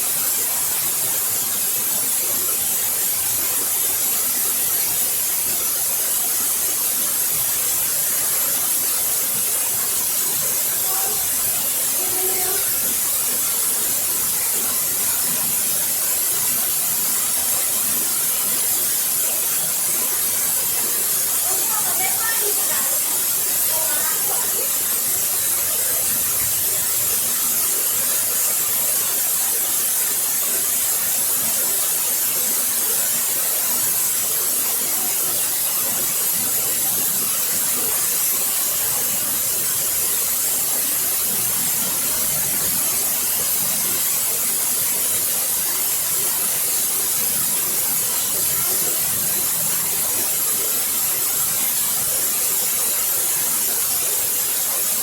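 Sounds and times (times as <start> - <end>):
waterfall rushing: 8.0 - 55.0.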